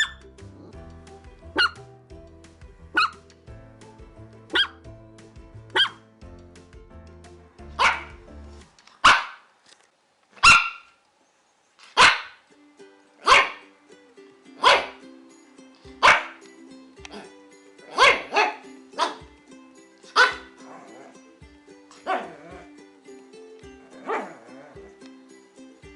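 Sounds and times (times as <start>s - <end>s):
soft background music: 0.0s - 9.0s, 11.5s - 25.9s
dog barking: 1.6s - 1.8s, 2.9s - 3.2s, 4.5s - 4.8s, 5.7s - 6.0s, 7.8s - 8.1s, 9.0s - 9.5s, 10.4s - 11.0s, 12.0s - 12.4s, 13.2s - 13.6s, 14.6s - 15.0s, 16.0s - 16.4s, 17.9s - 19.2s, 20.1s - 20.5s, 22.0s - 22.4s, 24.0s - 24.4s.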